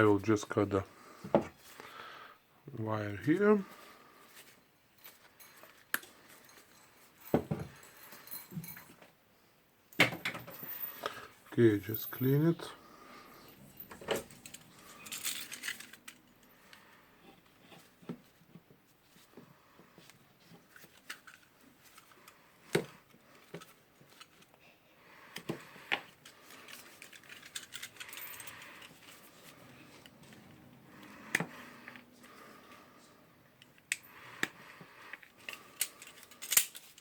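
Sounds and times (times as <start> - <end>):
hand tools clicking and scraping: 11.9 - 18.6, 25.3 - 37.0.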